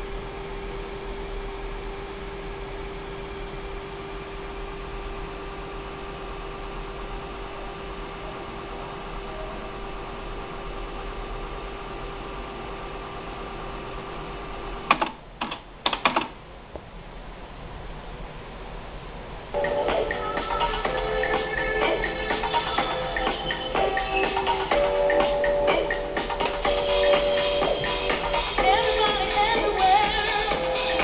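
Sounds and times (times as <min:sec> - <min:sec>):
tape hiss and hum: 0:00.0 - 0:31.0
sharp mechanical clicks: 0:14.9 - 0:16.4
faint constant tone: 0:17.7 - 0:31.0.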